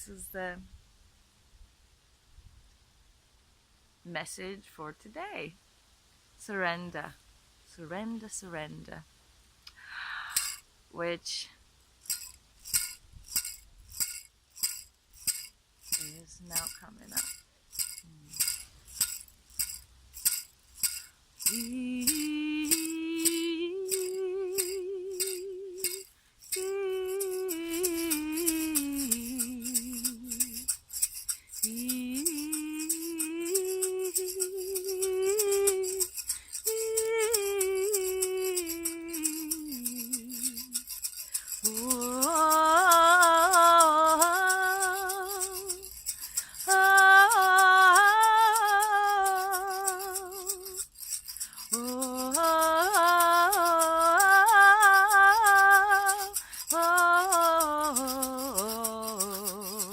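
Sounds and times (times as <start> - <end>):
woman singing wordlessly: 0.0 - 0.6, 6.4 - 9.0, 10.3 - 11.5, 15.9 - 17.3, 21.4 - 59.9
shaken rattle: 10.3 - 10.6, 12.0 - 59.9.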